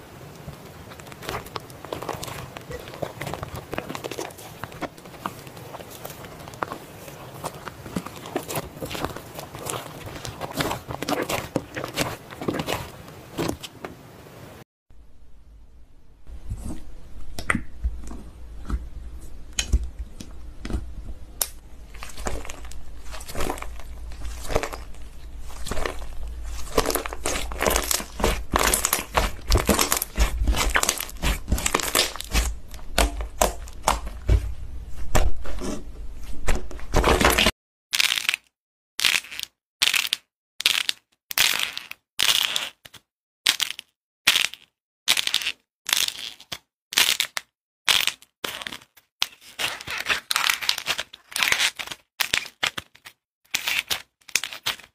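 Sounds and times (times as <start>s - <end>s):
slime squeezed by hand: 21.9s - 34.3s.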